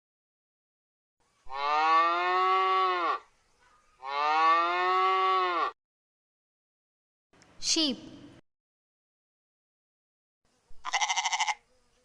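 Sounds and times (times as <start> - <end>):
cow mooing: 1.5 - 3.3, 4.0 - 5.8, 10.9 - 11.6.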